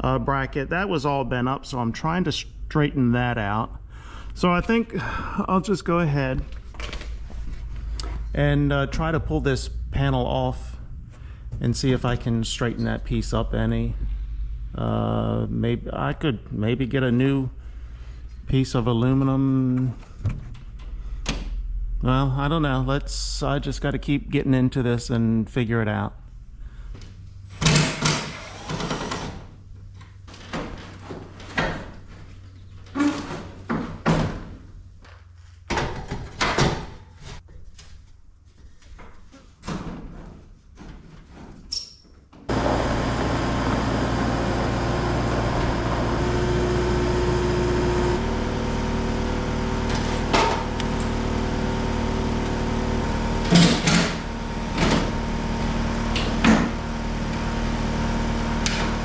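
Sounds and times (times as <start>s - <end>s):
loud steady machine noise: 28.0s - 29.4s, 42.5s - 59.0s
metal clanks and knocks: 53.4s - 55.2s.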